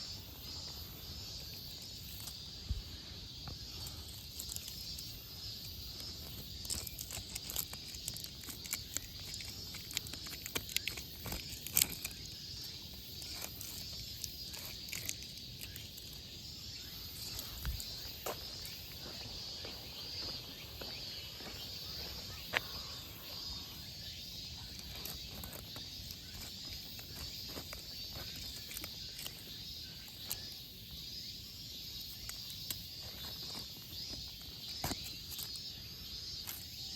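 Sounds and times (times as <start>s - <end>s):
shrill chorus of insects: 0.0s - 36.9s
footsteps on walking path: 16.8s - 29.6s.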